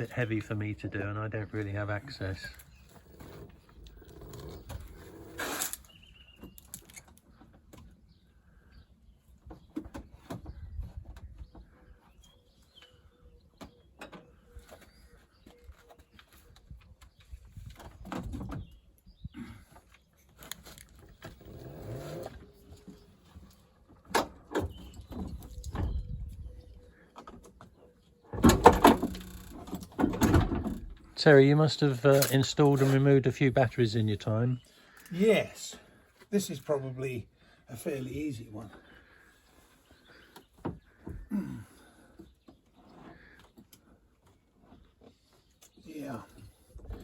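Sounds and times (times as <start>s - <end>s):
car battery knocking and rattling: 28.4s - 31.0s.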